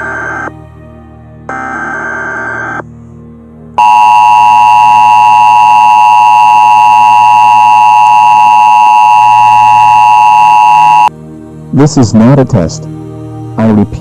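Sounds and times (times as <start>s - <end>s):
two-tone alarm: 1.5s - 2.8s, 3.8s - 11.1s.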